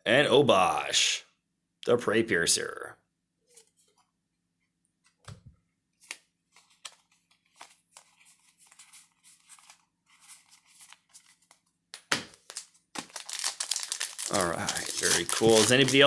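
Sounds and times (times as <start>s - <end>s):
packaging rustling: 6.0s - 11.7s, 12.3s - 16.0s
cards ticking: 12.0s - 16.0s.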